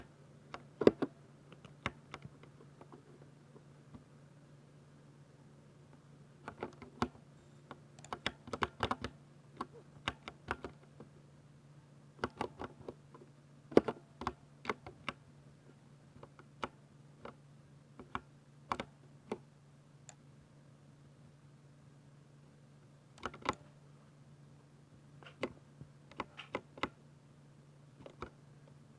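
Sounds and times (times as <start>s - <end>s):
faint low hum: 0.0s - 28.9s
mechanical keyboard typing: 8.0s - 10.8s, 23.2s - 23.6s.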